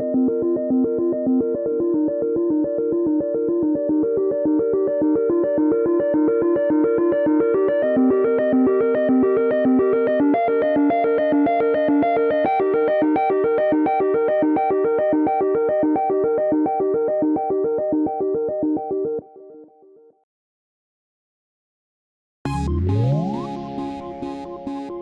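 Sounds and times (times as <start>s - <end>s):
synth keyboard ringtone melody: 12.2s - 19.8s, 22.5s - 25.0s.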